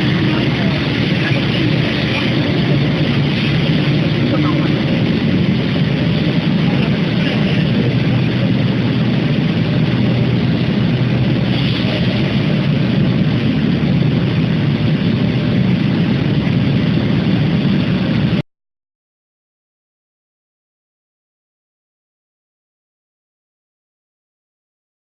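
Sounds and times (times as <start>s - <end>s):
industrial machinery drone: 0.0s - 18.4s.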